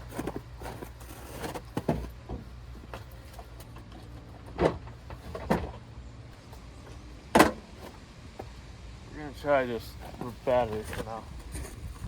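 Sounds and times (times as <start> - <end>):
clunks or knocks: 3.9 - 5.8, 7.3 - 7.9.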